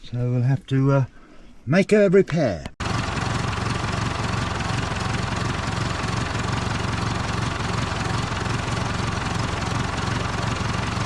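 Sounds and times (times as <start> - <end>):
backhoe engine idling: 2.8 - 11.0.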